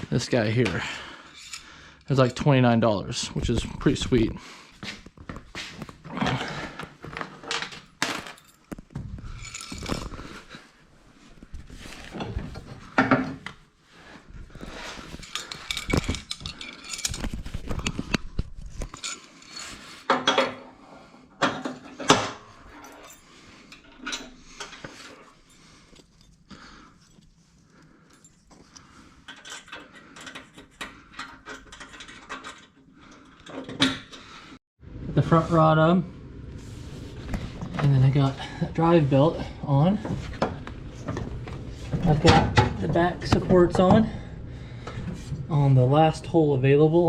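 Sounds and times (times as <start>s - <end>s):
metal clinking and clanking: 14.8s - 18.0s.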